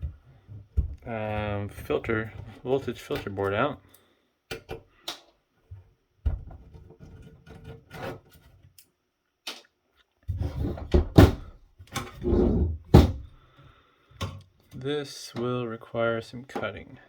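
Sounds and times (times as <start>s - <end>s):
rubbing and scraping on circuit board: 6.6s - 8.7s, 10.3s - 11.0s, 12.0s - 12.8s.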